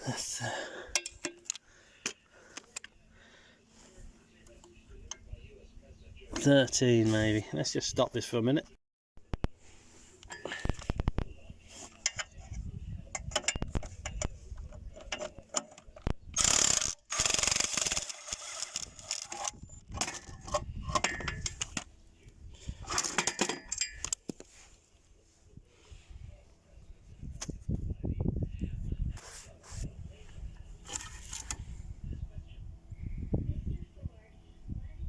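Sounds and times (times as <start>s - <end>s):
ratchet clicking: 16.4s - 19.5s
metal scraping: 30.8s - 31.8s.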